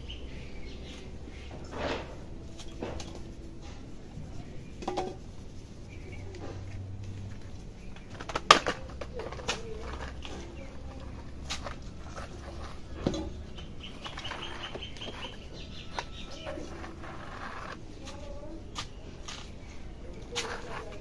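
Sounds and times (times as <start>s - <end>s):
hands rubbing: 1.9s - 21.0s.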